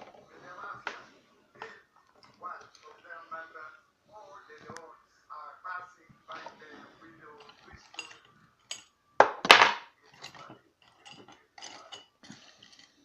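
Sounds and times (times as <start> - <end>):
metal tools clinking: 7.3 - 9.0, 9.9 - 13.0.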